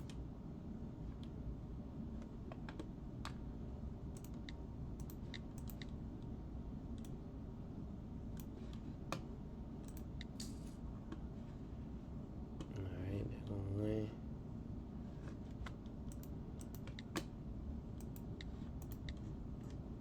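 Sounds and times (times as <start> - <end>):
mouse and keyboard clicks: 4.2 - 6.0, 15.6 - 17.3, 18.0 - 19.8.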